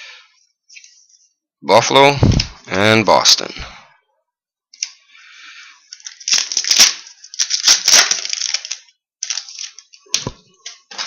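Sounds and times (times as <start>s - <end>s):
card packs crinkling and rustling: 5.9s - 11.0s.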